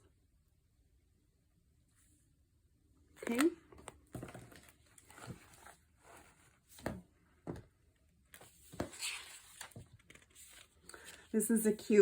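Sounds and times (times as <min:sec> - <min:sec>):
paper rustling: 0:04.2 - 0:07.0, 0:08.3 - 0:11.9.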